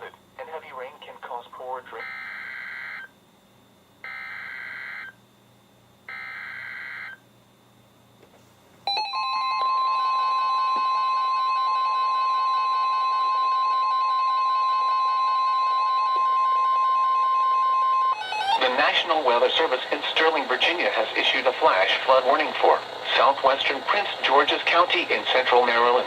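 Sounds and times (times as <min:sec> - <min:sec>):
loud steady alarm tone: 0:02.0 - 0:03.1, 0:04.0 - 0:05.2, 0:06.1 - 0:07.2, 0:08.9 - 0:26.0.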